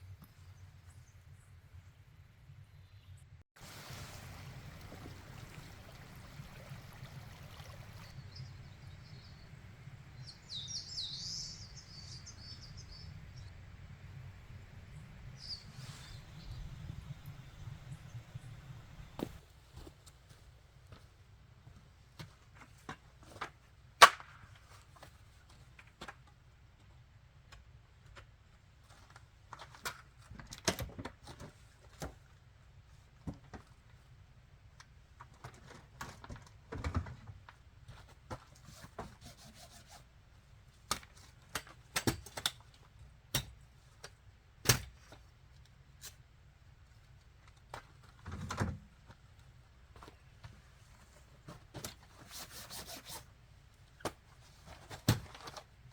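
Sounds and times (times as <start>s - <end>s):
camp gear clicks and thuds: 35.1s - 39.2s, 53.8s - 55.9s.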